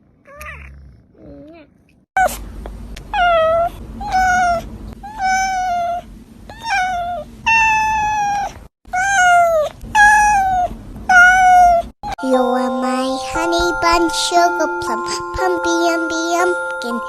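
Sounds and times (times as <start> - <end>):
cat meowing: 0.3 - 0.8, 3.1 - 11.9.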